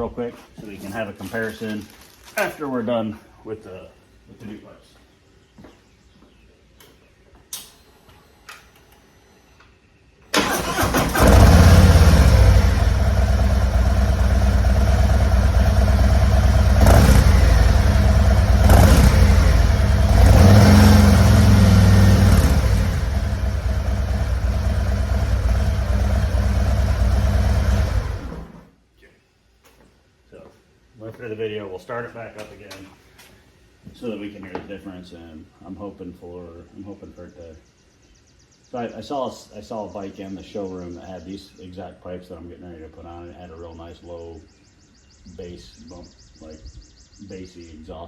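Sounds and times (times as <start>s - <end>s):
motorcycle engine cranking: 10.3s - 28.6s
motorcycle engine idling: 10.4s - 28.6s
motorcycle engine revving: 10.4s - 28.7s.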